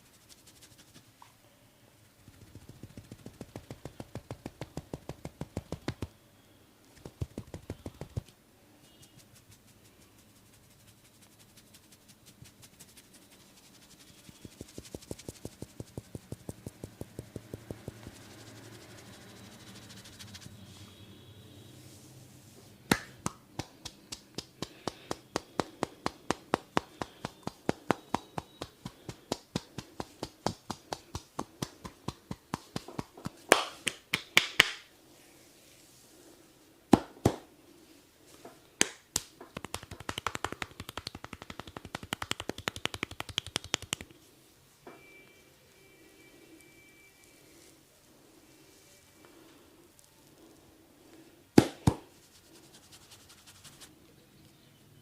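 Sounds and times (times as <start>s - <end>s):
hands slapping and tapping body: 2.2s - 6.2s, 7.0s - 8.4s, 11.8s - 18.6s, 22.9s - 34.9s, 36.9s - 37.5s, 38.8s - 44.2s, 51.6s - 52.1s.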